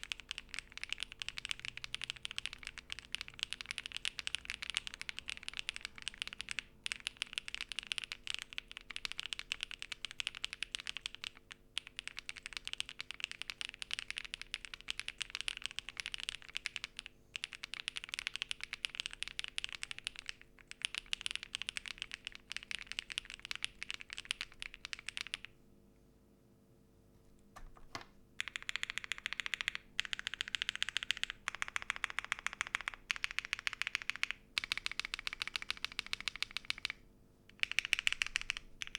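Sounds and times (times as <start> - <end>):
mechanical keyboard typing: 0.0 - 25.5, 27.6 - 38.9.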